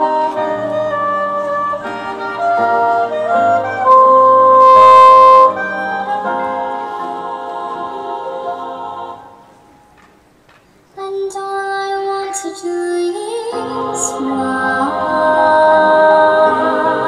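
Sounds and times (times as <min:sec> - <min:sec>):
soft solo melody: 0:00.0 - 0:06.6
marching band playing: 0:00.9 - 0:05.9.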